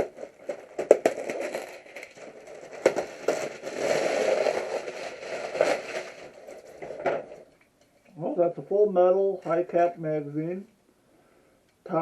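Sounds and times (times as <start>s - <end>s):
packaging crinkling and rustling: 0.0s - 7.7s.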